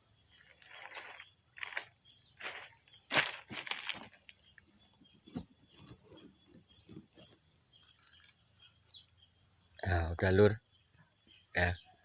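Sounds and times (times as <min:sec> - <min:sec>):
crickets and insects chirring: 0:00.0 - 0:12.0
leaves and twigs crunching: 0:00.3 - 0:08.5.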